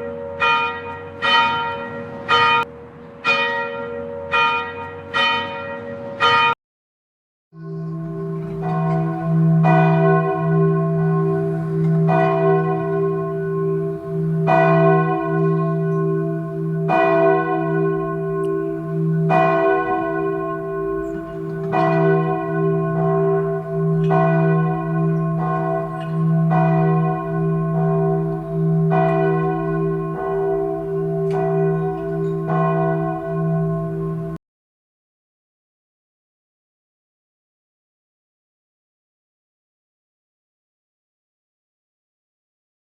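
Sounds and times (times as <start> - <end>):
church bells pealing: 0.0 - 6.6, 7.6 - 34.4.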